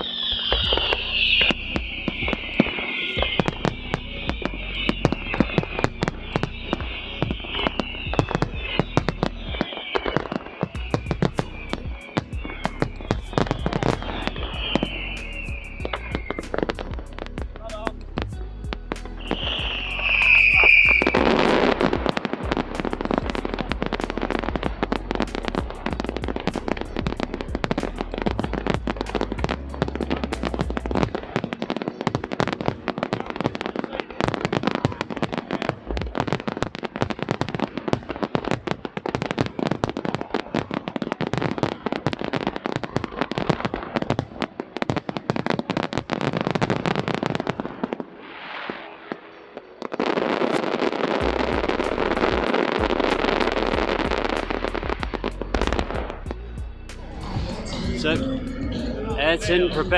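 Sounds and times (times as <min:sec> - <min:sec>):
high whistle: 0:00.0 - 0:31.6
fireworks crackling and banging: 0:00.0 - 0:59.9.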